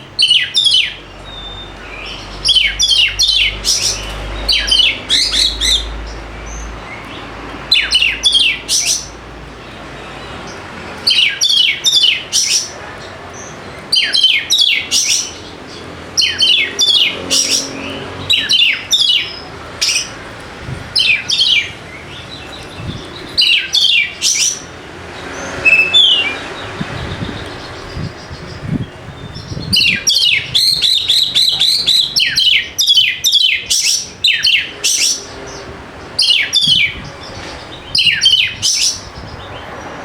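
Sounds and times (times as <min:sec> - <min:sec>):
bird calling sharp falling notes: 0:25.6 - 0:27.8.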